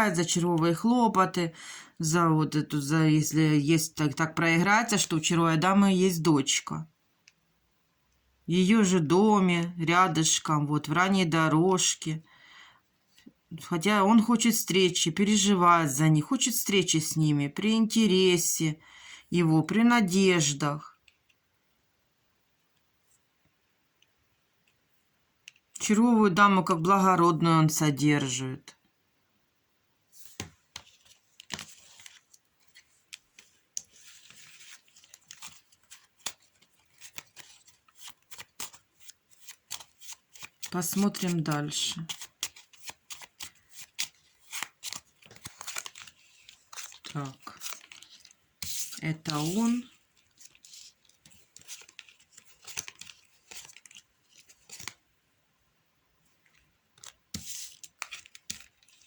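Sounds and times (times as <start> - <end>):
cards sliding rustles: 30.1 - 55.1, 56.4 - 59.0.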